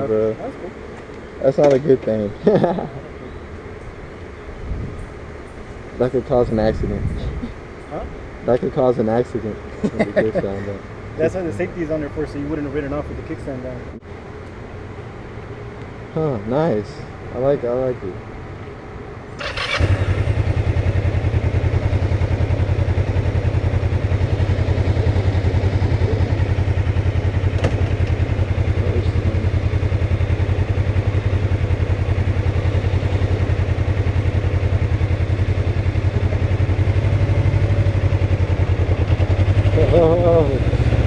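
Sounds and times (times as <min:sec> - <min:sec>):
motorcycle engine idling: 0:19.4 - 0:41.0.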